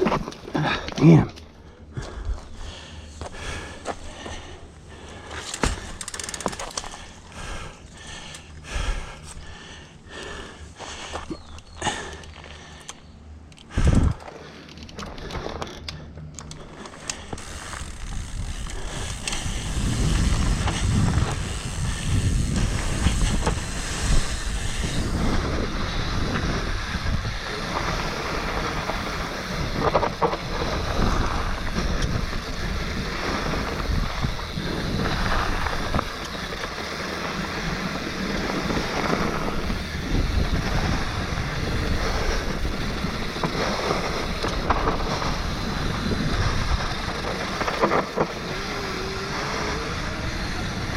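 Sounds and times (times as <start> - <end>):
mountain bike rattling over dirt: 0.0 - 1.2, 2.0 - 9.6, 13.7 - 50.9
wind rushing over microphone: 13.7 - 14.2, 17.8 - 50.9.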